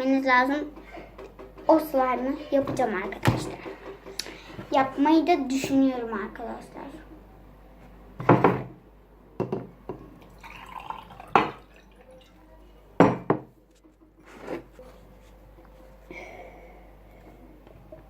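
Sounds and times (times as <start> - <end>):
jars knocking and clinking: 10.4 - 12.2.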